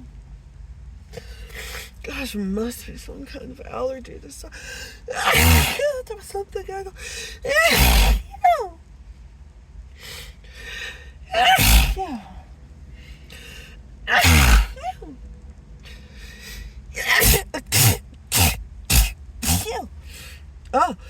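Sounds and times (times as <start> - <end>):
gasping breaths: 4.6 - 5.8, 7.0 - 8.2, 10.0 - 14.8, 15.8 - 20.5
person sneezing: 5.2 - 5.8, 7.5 - 8.3, 11.4 - 12.3, 14.1 - 15.0, 17.0 - 20.3.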